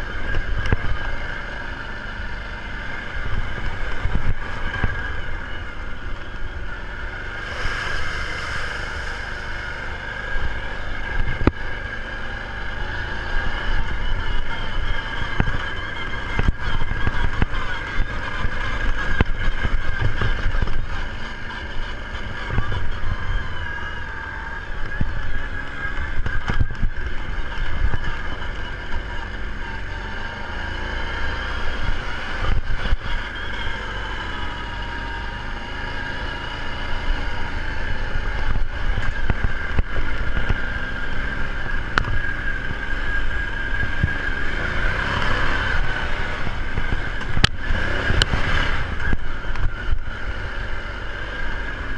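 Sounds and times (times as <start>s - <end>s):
atv engine running: 0.0s - 51.9s.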